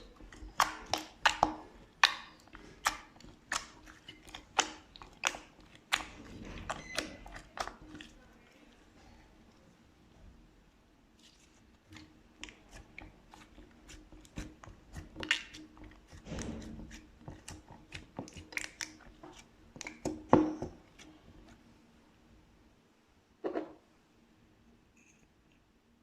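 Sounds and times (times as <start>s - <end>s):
slime clicking and popping: 0.4s - 7.8s.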